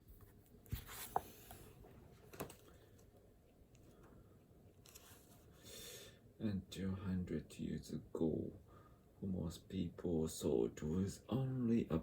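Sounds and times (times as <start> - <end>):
soft rustle: 0.0 - 4.1, 4.7 - 5.6.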